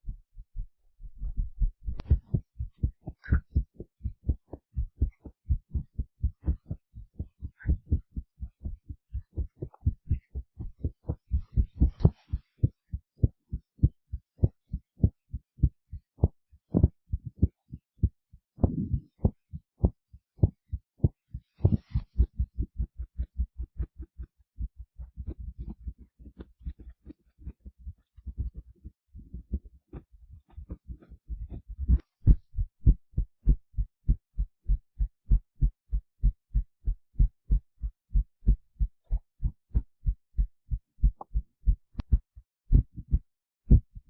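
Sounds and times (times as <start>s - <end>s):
heartbeat thumps: 0.0s - 44.0s.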